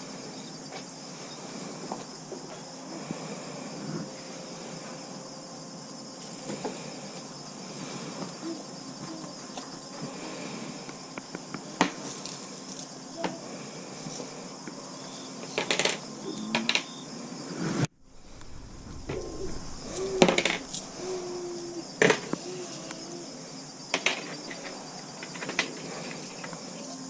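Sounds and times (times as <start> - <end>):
high-pitched hum: 17.9 - 22.0.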